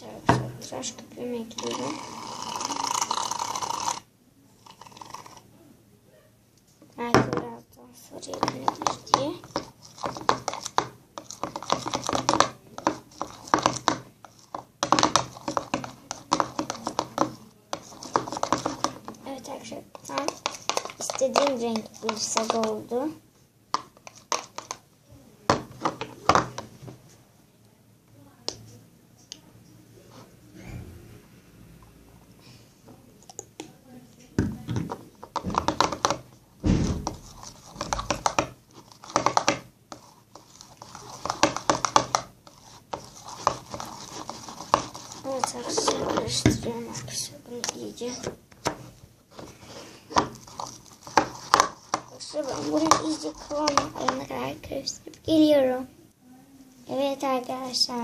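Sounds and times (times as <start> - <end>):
spoon stirring slime: 0.0 - 5.5, 7.0 - 24.9, 34.5 - 36.4, 37.0 - 55.7.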